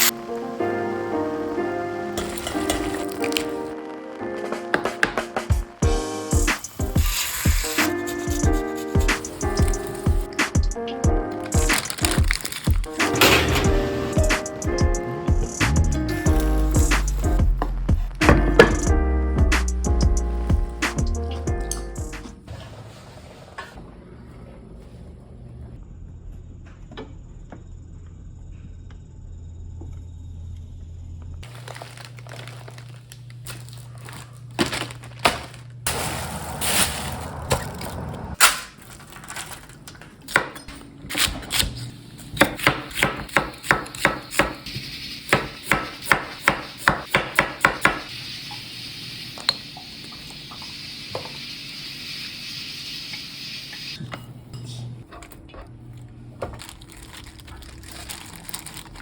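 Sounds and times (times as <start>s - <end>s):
dishes and utensils clattering: 2.2s - 3.6s, 11.5s - 14.4s
knife chopping on cutting board: 45.4s - 48.0s.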